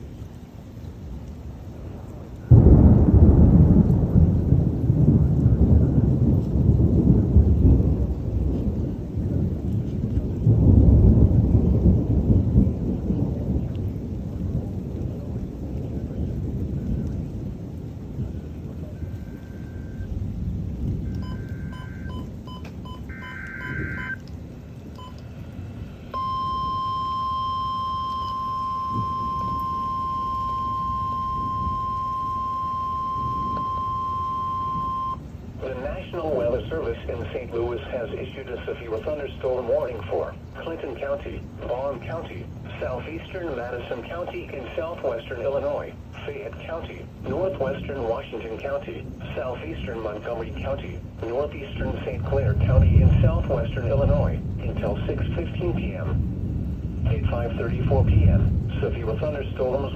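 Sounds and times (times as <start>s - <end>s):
steady rain hiss: 0.0s - 59.9s
thunderclap with low rumble: 0.0s - 59.9s
short beeps: 21.2s - 24.2s, 25.0s - 25.2s, 26.2s - 35.2s
steady attention tone: 21.2s - 24.2s, 26.1s - 35.2s.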